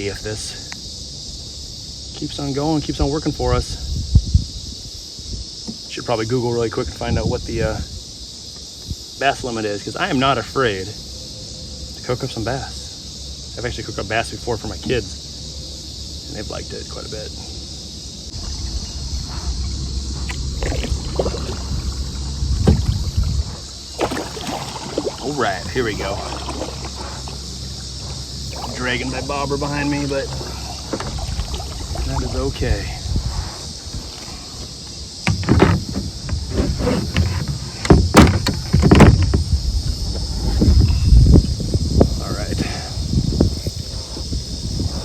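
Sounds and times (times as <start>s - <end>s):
low rumble: 18.3s - 24.0s
paddle strokes splashing water: 18.3s - 37.8s
sharp knocks: 22.6s - 23.0s, 35.2s - 39.5s.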